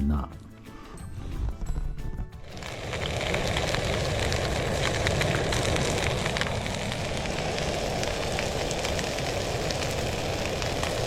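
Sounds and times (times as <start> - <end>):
crackles and pops: 1.4 - 11.0
fish sizzling on a grill: 2.4 - 11.0.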